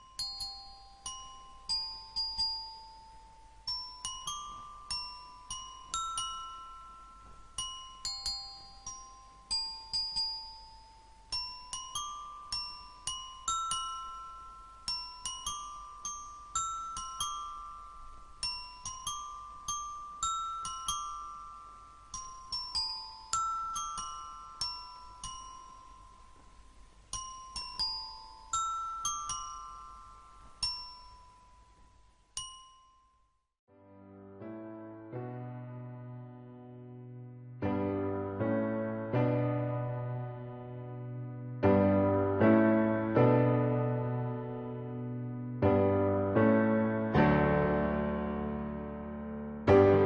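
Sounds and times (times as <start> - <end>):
slow bell-like melody: 0.0 - 33.6.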